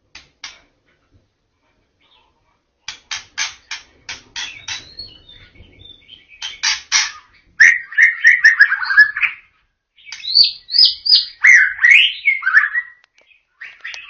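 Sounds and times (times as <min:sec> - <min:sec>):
bird singing: 0:04.4 - 0:14.0.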